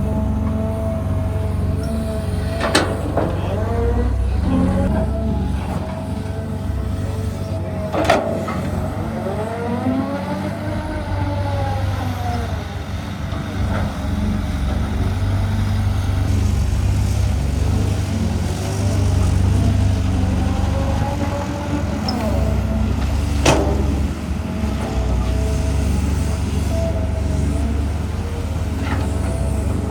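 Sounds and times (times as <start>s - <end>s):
excavator diesel engine running: 0.0s - 29.9s
hydraulic whine: 0.0s - 29.9s.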